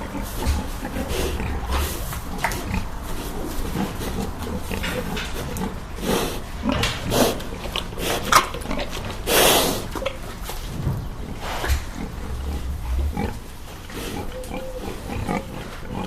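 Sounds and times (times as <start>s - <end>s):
pig grunting: 0.0s - 16.0s.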